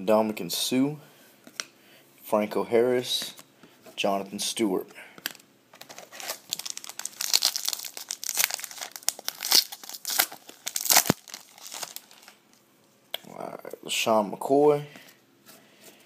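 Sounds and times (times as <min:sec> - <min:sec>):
wrapper tearing and crinkling: 0:05.8 - 0:12.4.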